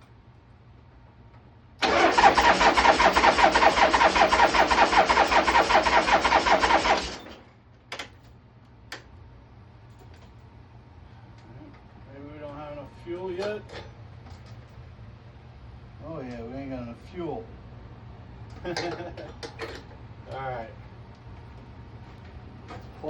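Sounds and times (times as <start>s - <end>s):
motorcycle engine cranking: 1.8s - 7.4s.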